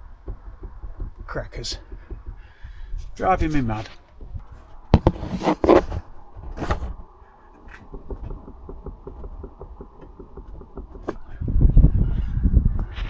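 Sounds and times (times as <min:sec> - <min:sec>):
suspension knocking: 0:00.0 - 0:05.2, 0:07.6 - 0:11.7.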